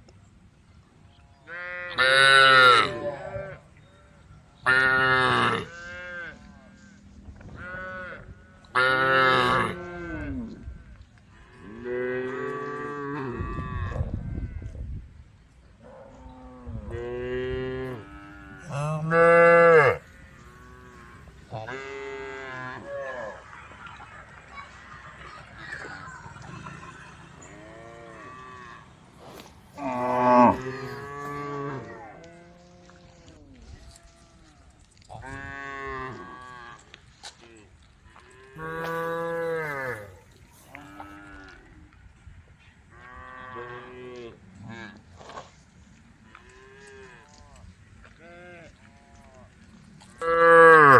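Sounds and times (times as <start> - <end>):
cows mooing: 15.9 - 23.4, 26.4 - 33.0, 38.3 - 41.6, 50.2 - 50.9.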